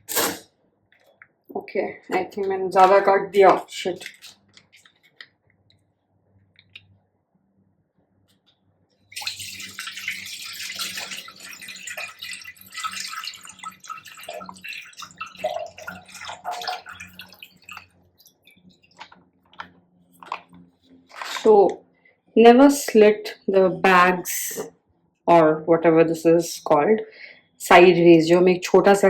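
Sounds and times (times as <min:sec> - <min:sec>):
liquid glugs and drips: 0:02.0 - 0:05.3, 0:09.1 - 0:21.7
milk pouring and splashing: 0:02.2 - 0:05.2, 0:09.1 - 0:19.2, 0:21.1 - 0:21.5.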